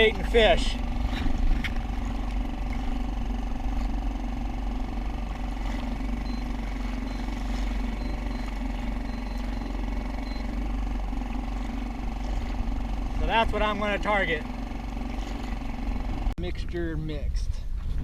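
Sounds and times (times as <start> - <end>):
low rumble with hum: 0.0 - 18.0
faint short high beeps: 7.9 - 10.6.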